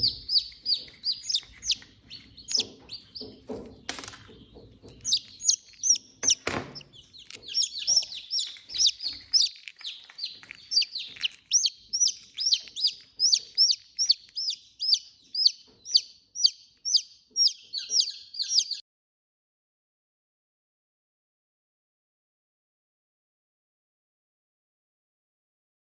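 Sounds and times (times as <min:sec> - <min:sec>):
chicks peeping: 0:00.0 - 0:18.8.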